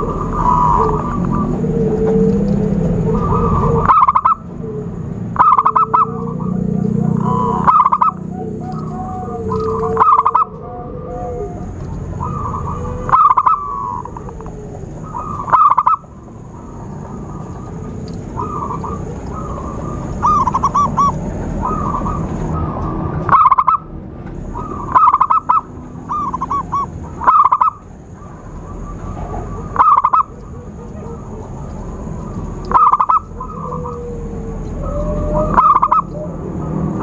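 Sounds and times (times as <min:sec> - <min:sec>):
dove cooing: 0:00.0 - 0:37.0.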